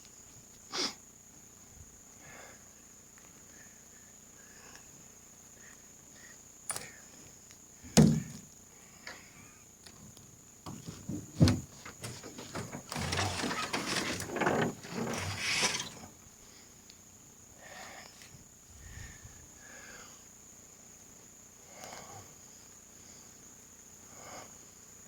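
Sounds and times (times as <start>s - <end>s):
rustling and scraping: 9.9s - 16.2s.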